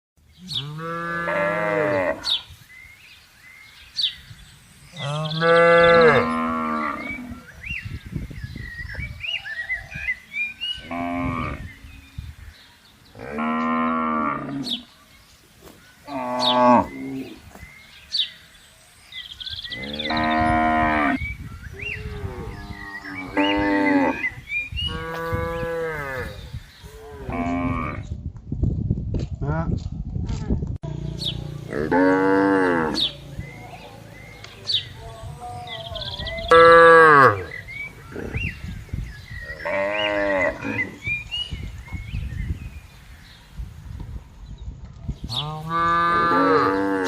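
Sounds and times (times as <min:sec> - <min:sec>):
cattle mooing: 0:31.7 - 0:33.2, 0:45.4 - 0:47.0.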